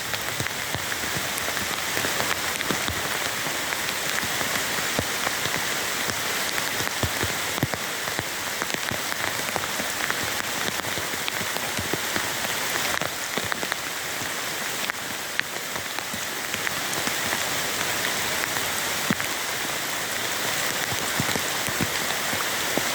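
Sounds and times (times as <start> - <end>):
heavy rain falling: 0.0 - 22.9.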